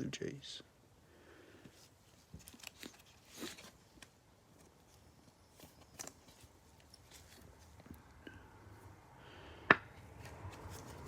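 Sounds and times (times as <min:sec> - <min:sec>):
trading cards clicking and rustling: 0:02.2 - 0:04.8.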